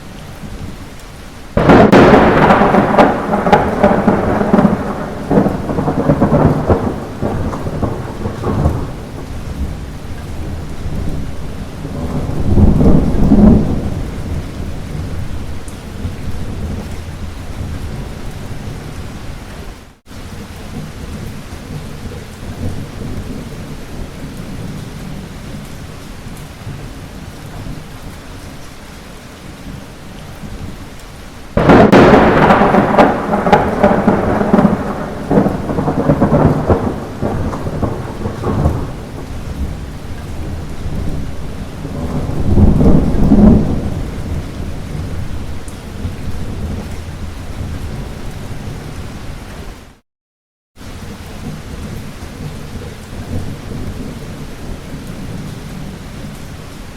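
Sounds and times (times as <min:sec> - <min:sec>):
light rain: 0:00.0 - 0:50.0, 0:50.8 - 0:56.9
thunder rumbling: 0:01.6 - 0:19.4, 0:31.5 - 0:49.4.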